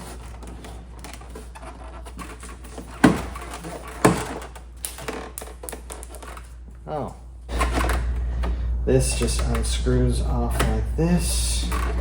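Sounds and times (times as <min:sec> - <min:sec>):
plastic parts clicking and rustling: 0:00.0 - 0:06.6
sharp knocks: 0:02.9 - 0:04.5.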